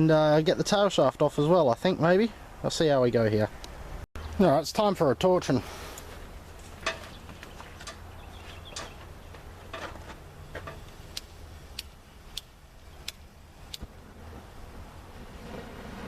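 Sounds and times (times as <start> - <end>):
sharp clicks: 10.9 - 13.9.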